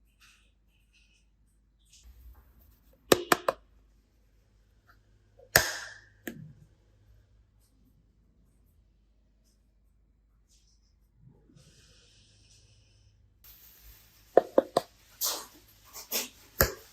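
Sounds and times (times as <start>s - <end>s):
sharp snaps: 5.4s - 6.4s.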